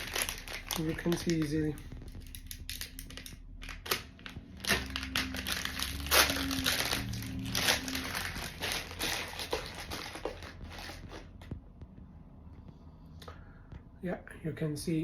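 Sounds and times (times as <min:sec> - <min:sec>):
plastic packaging crinkling: 0:00.0 - 0:11.3.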